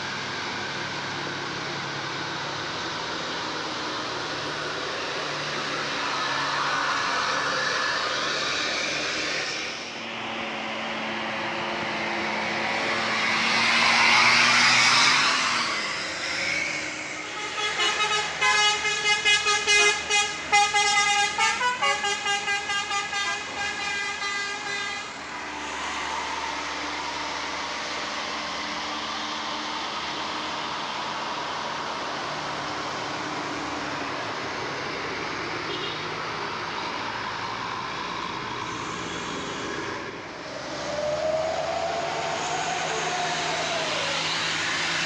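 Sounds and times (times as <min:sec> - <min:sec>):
bus engine passing: 0:00.0 - 0:45.0
multi-tone bus horn tune: 0:17.2 - 0:25.2, 0:35.7 - 0:36.0.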